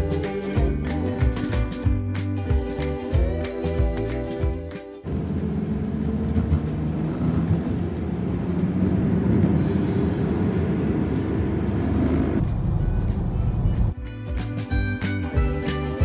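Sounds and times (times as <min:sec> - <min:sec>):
car interior road and engine noise: 0:05.0 - 0:14.0.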